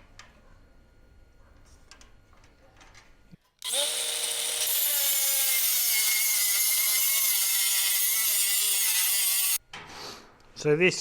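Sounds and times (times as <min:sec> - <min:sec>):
power saw cutting metal: 0:03.6 - 0:09.6.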